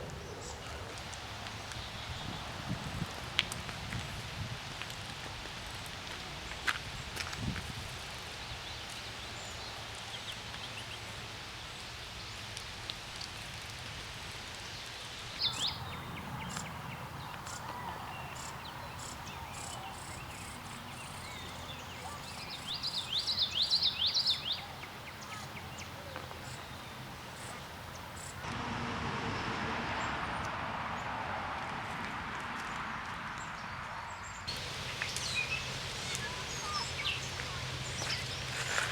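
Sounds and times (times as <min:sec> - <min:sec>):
bird chirps: 0:15.4 - 0:28.4, 0:34.5 - 0:38.8.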